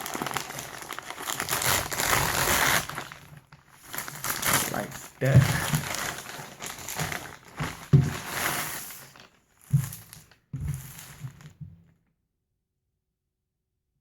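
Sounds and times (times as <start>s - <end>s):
plastic packaging crinkling: 0.0s - 11.6s.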